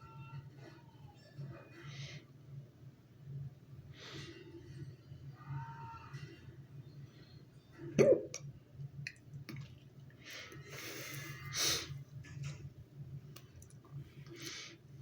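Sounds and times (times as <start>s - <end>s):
person hiccuping: 8.0s - 8.4s
breathing in and out: 14.1s - 14.9s.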